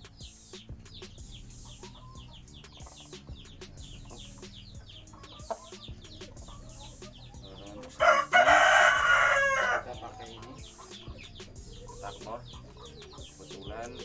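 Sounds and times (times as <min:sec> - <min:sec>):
high falling chirps: 0:00.0 - 0:14.0
rooster crowing: 0:07.7 - 0:11.3.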